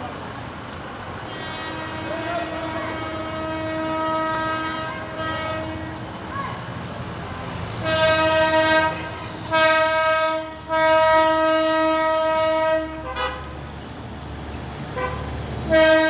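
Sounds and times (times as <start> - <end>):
locomotive engine rumble: 0.0 - 16.0
locomotive horn blasts: 1.2 - 6.0, 7.8 - 13.6, 14.9 - 16.0.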